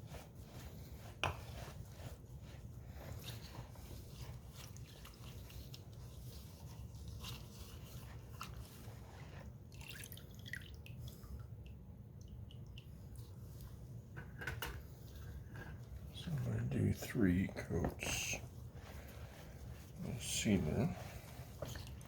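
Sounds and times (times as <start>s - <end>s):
low steady hum: 0.0s - 22.0s
liquid dripping: 9.7s - 13.7s.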